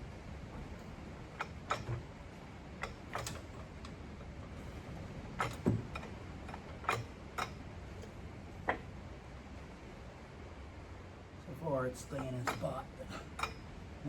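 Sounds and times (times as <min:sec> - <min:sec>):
metal clicks and knocks: 0:01.3 - 0:02.2, 0:02.8 - 0:04.7, 0:05.3 - 0:08.9.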